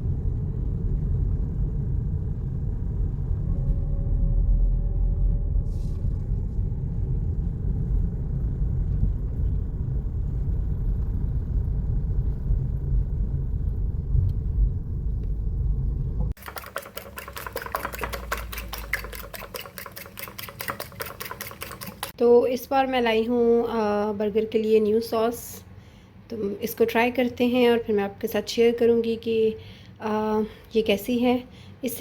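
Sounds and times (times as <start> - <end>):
car rumble inside cabin: 0.0 - 16.4
fast even clicking: 16.4 - 22.2.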